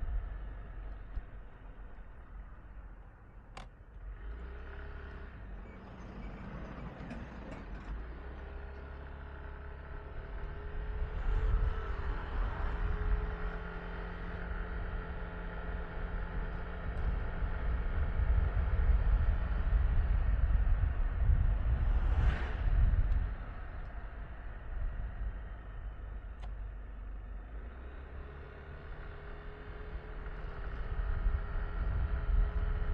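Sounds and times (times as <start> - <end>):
wind rumble on microphone: 9.9 - 26.7, 29.6 - 32.9.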